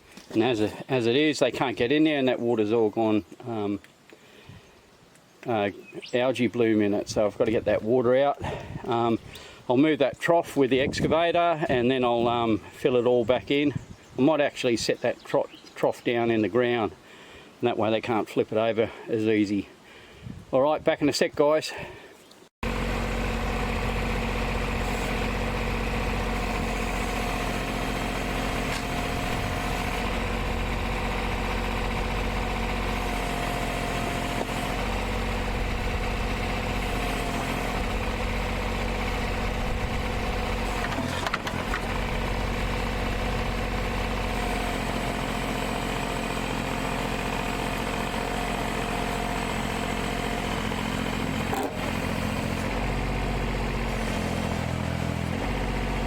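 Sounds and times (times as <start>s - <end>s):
diesel engine running: 22.6s - 56.0s
high hydraulic whine: 22.7s - 55.8s.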